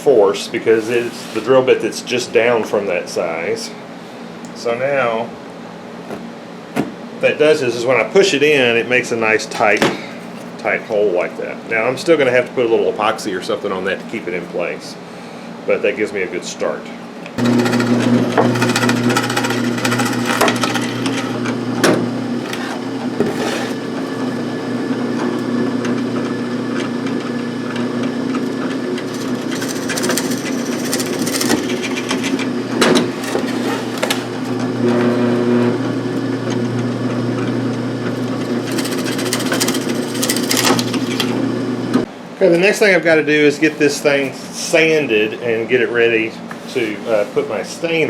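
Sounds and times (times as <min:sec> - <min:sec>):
power drill boring into wood: 0:17.4 - 0:42.0.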